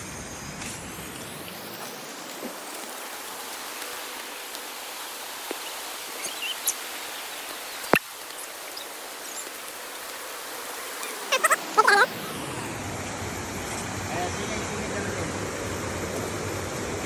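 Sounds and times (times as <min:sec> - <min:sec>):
stream water flowing: 0:00.9 - 0:17.0
short high calls: 0:11.1 - 0:12.3.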